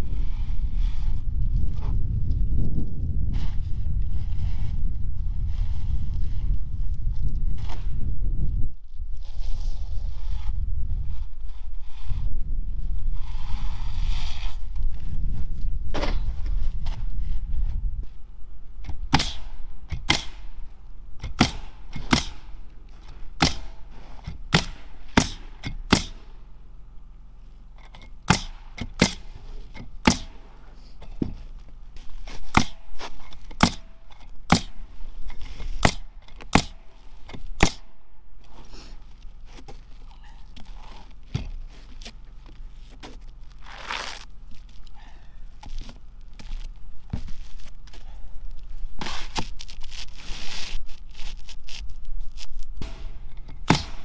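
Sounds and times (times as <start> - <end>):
nail gun firing into shingles: 18.8 - 20.6, 21.2 - 22.7, 23.4 - 26.4, 28.2 - 30.5, 32.4 - 38.0, 52.8 - 54.0
rustling: 38.4 - 54.0.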